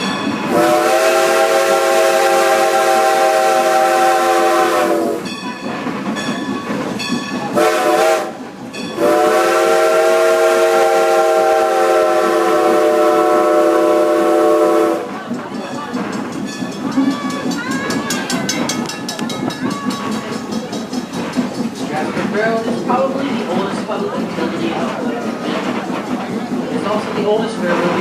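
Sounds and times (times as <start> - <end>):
steam locomotive chime whistle: 0.0 - 15.2
train running on rails: 0.0 - 28.0.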